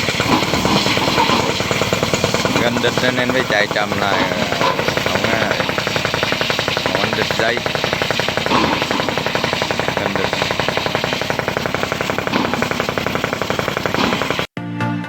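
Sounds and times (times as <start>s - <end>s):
wire saw cutting stone: 0.0s - 14.5s
music: 14.6s - 15.0s.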